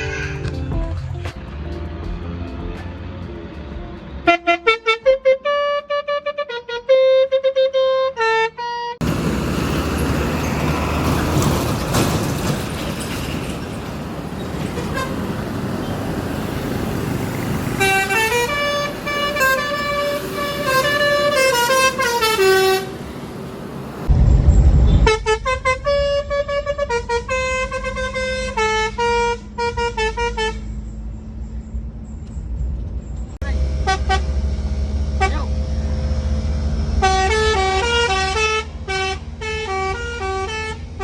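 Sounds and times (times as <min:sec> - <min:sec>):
air horn playing melody: 0:04.2 - 0:09.0, 0:17.8 - 0:23.0, 0:25.0 - 0:30.7, 0:33.6 - 0:34.4, 0:37.0 - 0:41.0
steady noise: 0:23.3 - 0:27.0
loud low rumble: 0:24.0 - 0:28.1.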